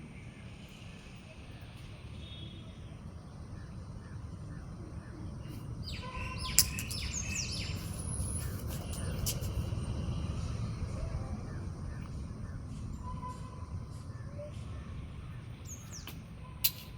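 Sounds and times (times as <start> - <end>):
low background rumble: 0.0 - 16.9
shrill bird calls: 5.4 - 9.4
sharp click: 6.6 - 7.4.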